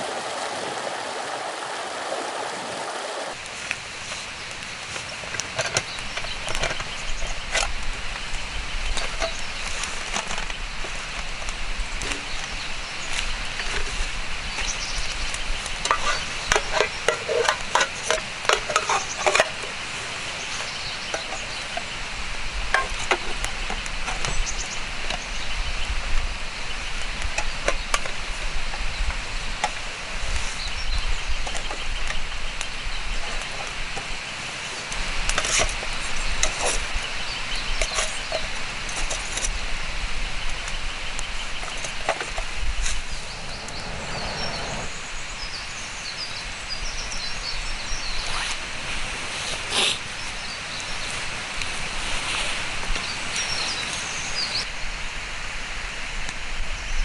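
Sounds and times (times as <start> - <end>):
wood fire crackling: 3.3 - 45.0.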